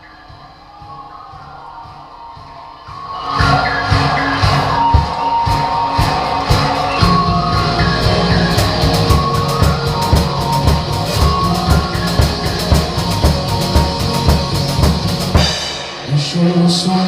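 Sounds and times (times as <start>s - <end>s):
kick drum beats: 0.0s - 15.8s
recorded rock song: 0.0s - 17.0s
cymbal strikes: 5.5s - 17.0s.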